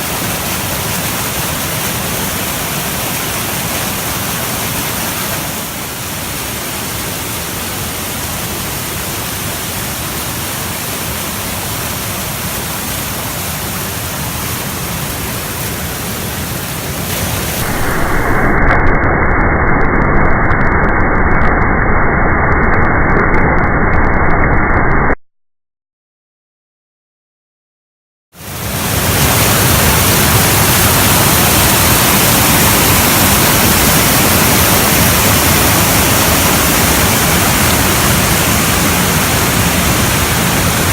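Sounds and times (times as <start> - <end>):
waterfall rushing: 0.0 - 19.0, 28.4 - 40.9.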